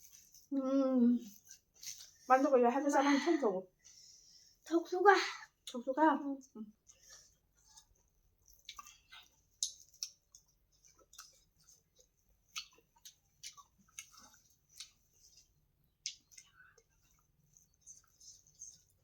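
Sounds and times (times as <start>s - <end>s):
person chewing food: 0.0s - 0.6s, 1.2s - 2.3s, 6.7s - 19.0s.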